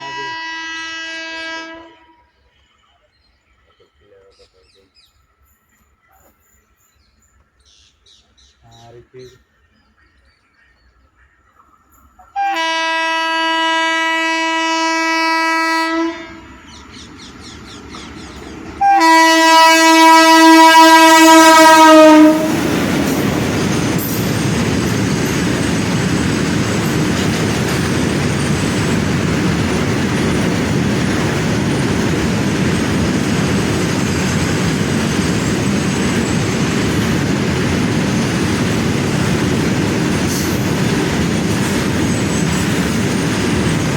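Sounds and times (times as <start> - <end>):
locomotive horn blasts: 0.0 - 2.3, 12.3 - 16.5, 18.8 - 22.6
freight wagons rolling on rails: 22.5 - 43.9.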